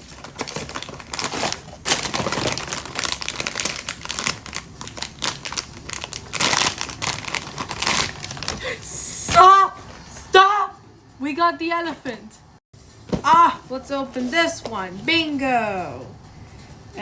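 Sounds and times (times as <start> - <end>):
packaging crinkling and ripping: 0.0 - 8.7.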